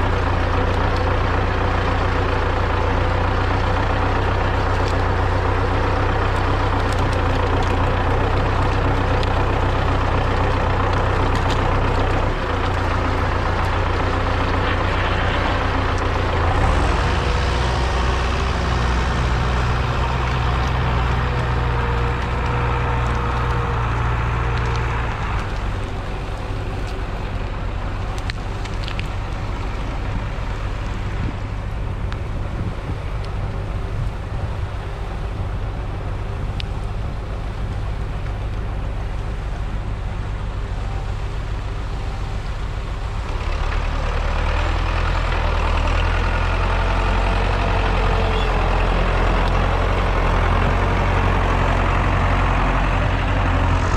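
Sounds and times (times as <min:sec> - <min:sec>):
tractor diesel engine running: 0:00.0 - 0:53.9.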